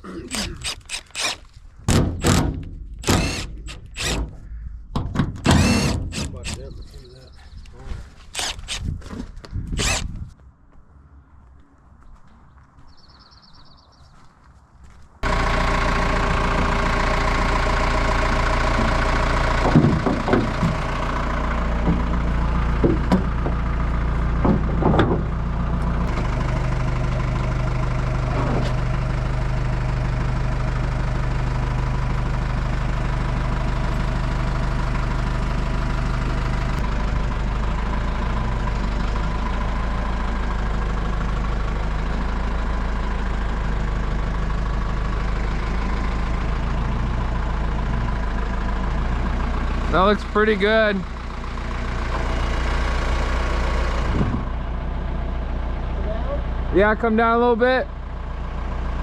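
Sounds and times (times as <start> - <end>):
engine idling: 0.0 - 8.8, 9.8 - 10.1, 15.2 - 59.0
sharp metal knocks: 1.9 - 6.5.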